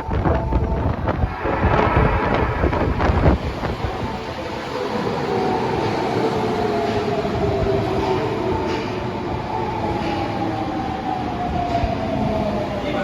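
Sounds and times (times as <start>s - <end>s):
train wheel and running noise: 4.9s - 13.0s.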